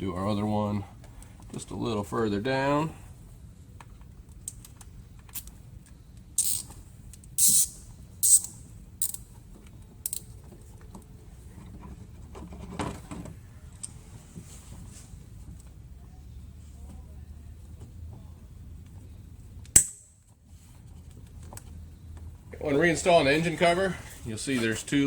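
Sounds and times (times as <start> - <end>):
zip tie ratcheting: 6.4 - 6.7, 7.4 - 9.2.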